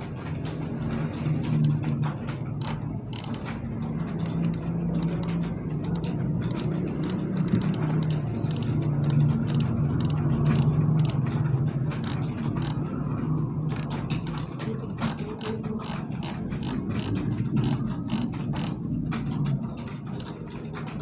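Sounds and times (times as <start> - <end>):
computer keyboard typing: 0.0 - 21.0.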